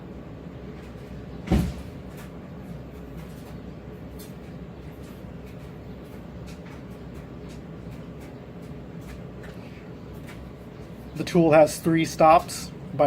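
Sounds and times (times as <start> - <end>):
steady low hum: 0.0 - 13.0
sharp thump: 1.5 - 1.9.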